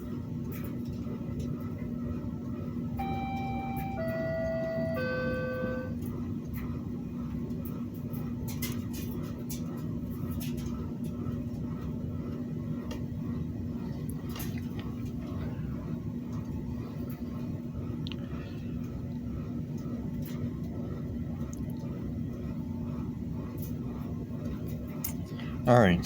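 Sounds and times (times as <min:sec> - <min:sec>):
steady electrical hum: 0:00.0 - 0:26.0
held electronic tones: 0:03.0 - 0:06.0.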